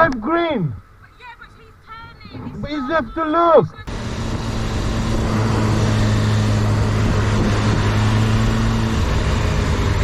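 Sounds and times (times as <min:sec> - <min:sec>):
wind and road noise: 0:00.0 - 0:10.0
motorcycle engine running: 0:03.9 - 0:10.0.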